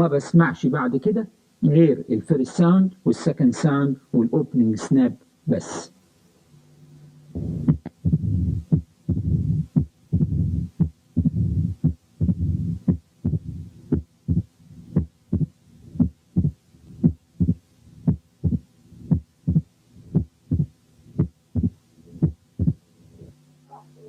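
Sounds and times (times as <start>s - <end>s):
heartbeats through stethoscope: 7.4s - 22.8s
low rumbling heart murmur: 7.4s - 22.8s.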